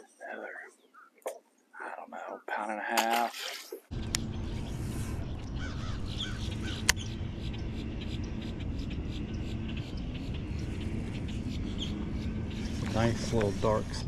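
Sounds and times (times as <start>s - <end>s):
birds calling: 0.0s - 3.3s, 3.9s - 14.0s
steady low rumble: 3.9s - 14.0s.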